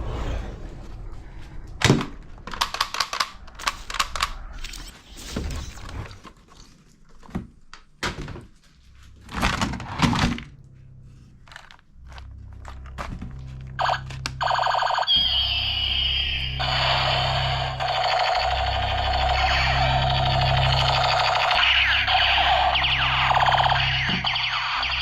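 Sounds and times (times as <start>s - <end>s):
toy guns clicking and knocking: 2.5s - 4.4s.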